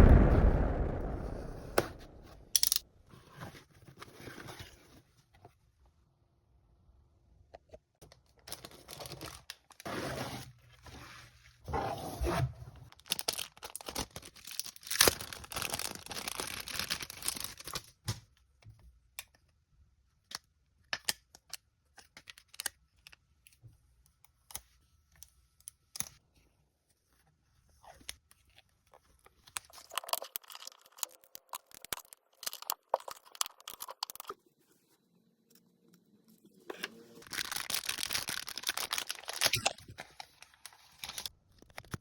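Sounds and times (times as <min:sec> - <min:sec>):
packaging tearing and crinkling: 0:13.0 - 0:17.9, 0:37.2 - 0:42.0.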